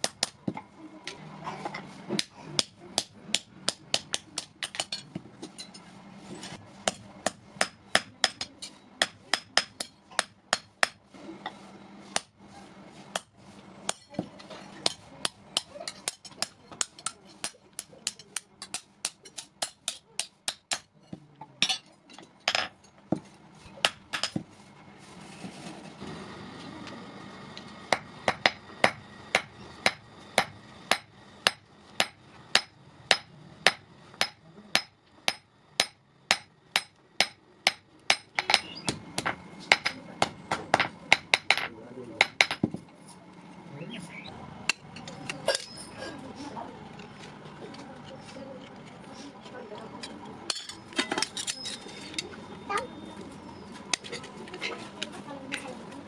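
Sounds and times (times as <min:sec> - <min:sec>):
hammer striking iron: 0:00.0 - 0:00.4, 0:02.2 - 0:05.1, 0:06.8 - 0:11.0, 0:13.9 - 0:20.9, 0:27.9 - 0:42.8.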